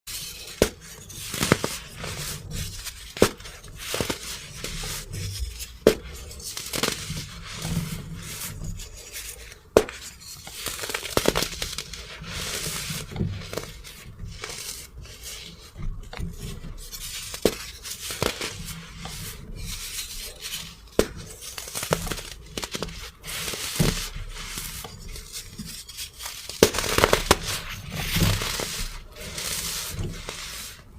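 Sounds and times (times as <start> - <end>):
baking soda crunching: 9.0 - 15.7, 17.0 - 30.9.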